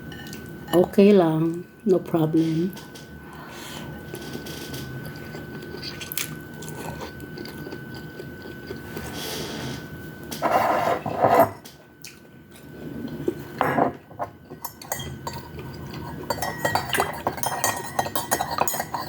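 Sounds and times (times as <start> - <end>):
cutlery clinking on a plate: 13.6 - 19.0.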